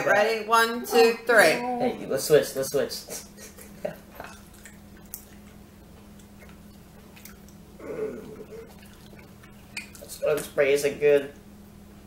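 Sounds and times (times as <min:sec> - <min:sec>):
faint steady hum: 0:00.0 - 0:12.0
people chewing: 0:03.1 - 0:10.6
closed-mouth groan: 0:07.8 - 0:09.0.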